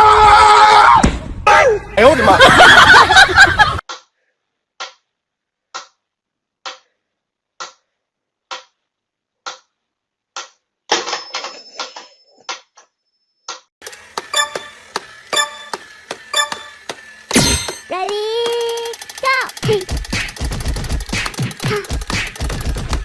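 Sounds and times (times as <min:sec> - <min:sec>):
faint steady high tone: 0:14.3 - 0:16.8
sharp ticks: 0:17.8 - 0:23.0
quick clicking: 0:18.1 - 0:23.0.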